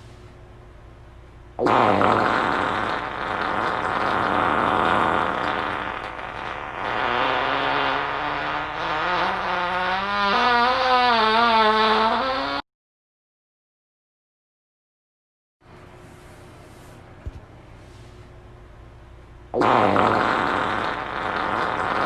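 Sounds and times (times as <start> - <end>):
long fart: 1.6 - 12.7, 19.5 - 22.0.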